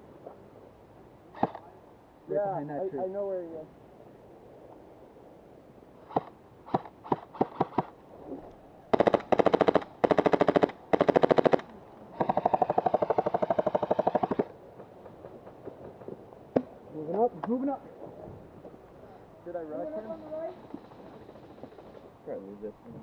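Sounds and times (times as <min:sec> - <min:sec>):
airsoft gun shots and bursts: 0:06.1 - 0:07.9, 0:08.9 - 0:11.6.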